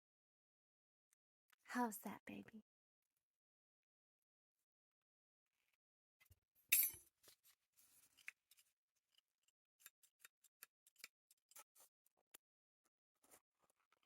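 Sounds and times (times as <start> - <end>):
small sharp clicks and snips: 9.8 - 11.9.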